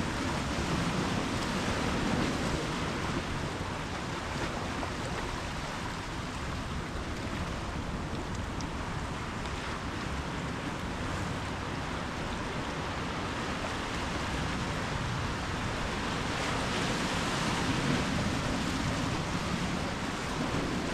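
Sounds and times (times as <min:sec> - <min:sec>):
waves washing onto shore: 0:00.0 - 0:20.9.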